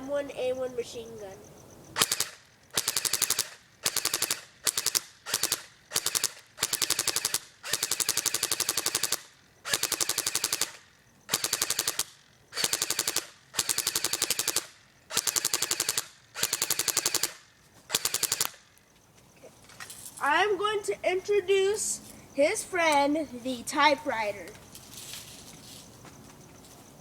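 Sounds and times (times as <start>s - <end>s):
submachine gun bursts: 2.0s - 18.7s.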